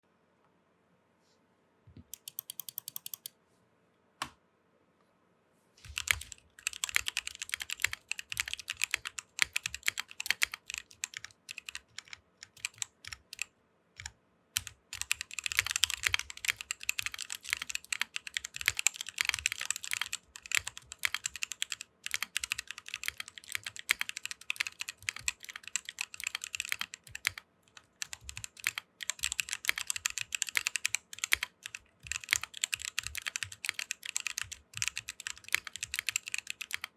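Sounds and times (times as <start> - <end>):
mechanical keyboard key clacks: 2.2 - 3.3.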